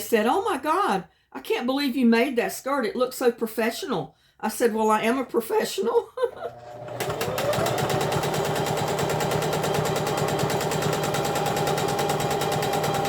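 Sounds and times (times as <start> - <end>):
sewing machine motor hum: 6.3 - 13.0
sewing machine needle clatter: 6.8 - 13.0.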